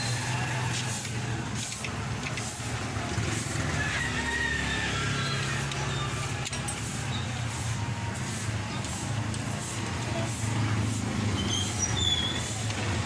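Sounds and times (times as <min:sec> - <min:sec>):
rooster crowing: 0:03.6 - 0:05.8.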